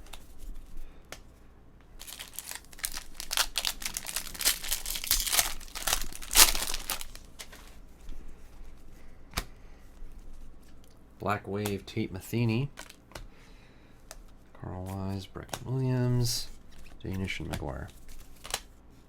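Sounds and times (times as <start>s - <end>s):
foil wrapper tearing and crinkling: 2.0s - 7.6s, 12.6s - 13.0s.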